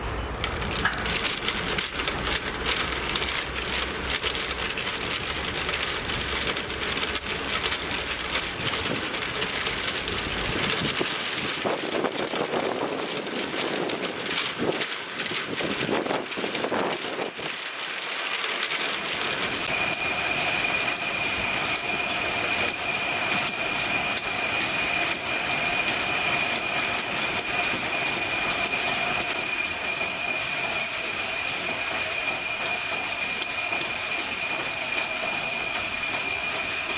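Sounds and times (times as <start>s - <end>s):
bottles rattling and clattering: 0.7s - 17.5s.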